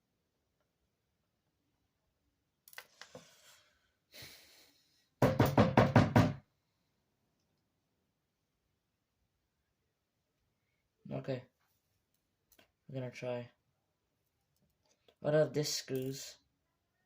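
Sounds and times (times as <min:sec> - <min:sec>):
loud knocks: 0:05.2 - 0:06.4.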